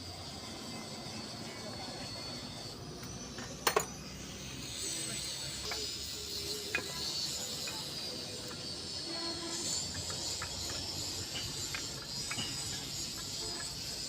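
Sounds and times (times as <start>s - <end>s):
steady background hum: 0.0s - 14.0s
metal tools clinking: 9.3s - 14.0s.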